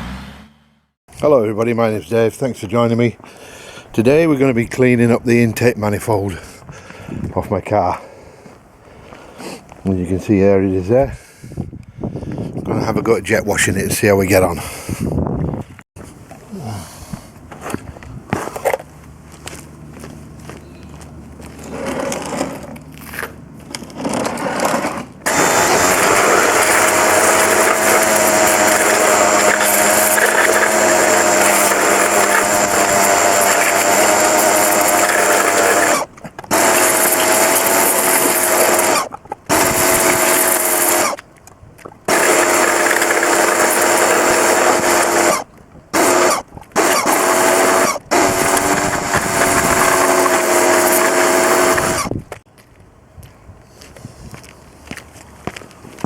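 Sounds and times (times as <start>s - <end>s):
pressure washer pump whining: 21.6s - 41.2s, 42.1s - 52.1s
water jet hissing: 25.3s - 38.9s.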